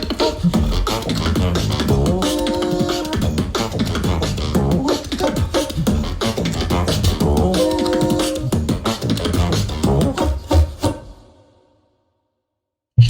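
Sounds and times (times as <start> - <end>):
beatboxing vocal drums: 0.0 - 11.1
deep bass: 0.4 - 4.9, 5.8 - 7.6, 8.4 - 10.2
held pitched vocal note: 0.4 - 8.7.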